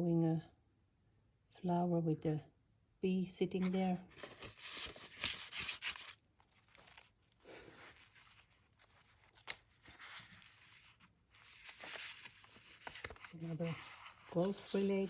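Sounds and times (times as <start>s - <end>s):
paper rustling and crinkling: 3.6s - 15.0s.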